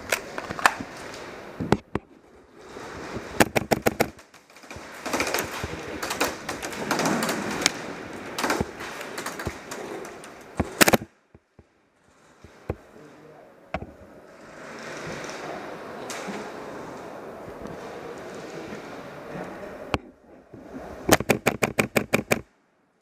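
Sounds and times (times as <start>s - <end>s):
rustling movement: 0.0s - 22.5s
airsoft guns firing: 3.4s - 11.1s, 21.1s - 22.5s.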